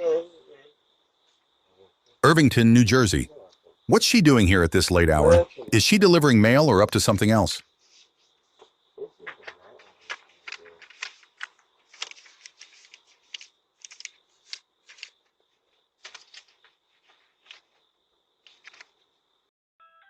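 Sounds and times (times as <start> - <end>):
rustling and clicking handling noises: 9.2 - 17.8, 18.4 - 19.1.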